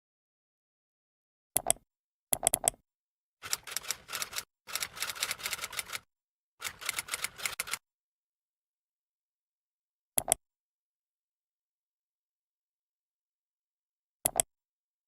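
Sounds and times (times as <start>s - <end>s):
keyboard typing clicks: 3.4s - 6.0s, 6.6s - 7.8s.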